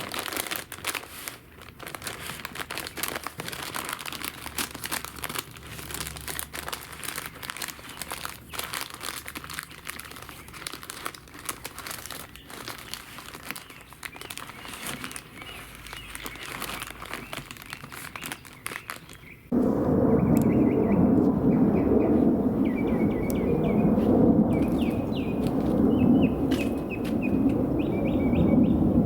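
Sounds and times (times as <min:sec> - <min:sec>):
paper crinkling and rustling: 0:00.0 - 0:19.3.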